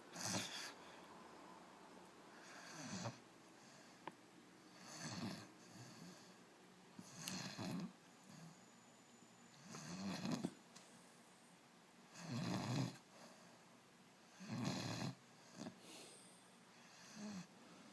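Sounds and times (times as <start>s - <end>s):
puppy snoring: 0.1s - 1.0s, 2.3s - 4.0s, 4.7s - 6.4s, 7.0s - 8.7s, 9.5s - 10.6s, 12.1s - 13.5s, 14.2s - 16.0s, 16.7s - 17.5s.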